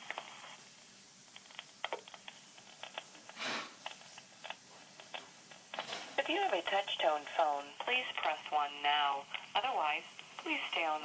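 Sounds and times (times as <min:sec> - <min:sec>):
telephone line clicks and crackle: 0:01.3 - 0:11.0
short hiss of noise: 0:02.7 - 0:04.2.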